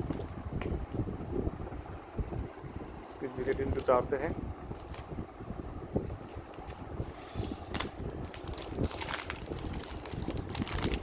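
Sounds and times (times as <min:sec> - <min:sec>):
low background hum: 0:00.0 - 0:11.0
plastic film peeling and crinkling: 0:04.7 - 0:05.1, 0:06.0 - 0:11.0.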